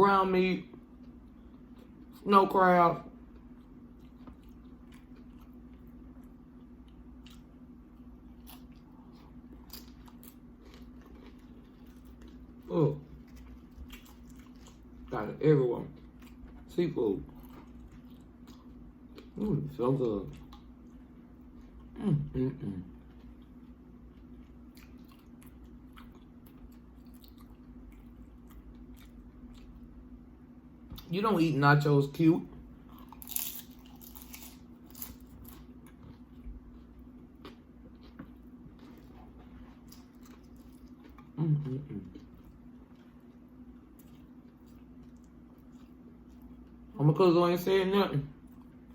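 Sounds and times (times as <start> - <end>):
steady low hum: 0.0 - 48.9
chewing and wet mouth sounds: 3.0 - 15.2, 15.8 - 22.0, 22.9 - 30.1, 32.5 - 47.0, 48.3 - 48.9
wet chewing: 3.3 - 15.1, 23.0 - 29.9.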